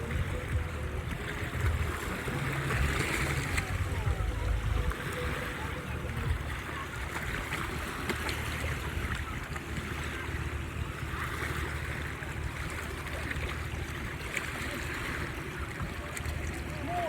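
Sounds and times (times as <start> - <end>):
low rumble: 0.0 - 9.4
sea waves washing in: 0.0 - 17.0.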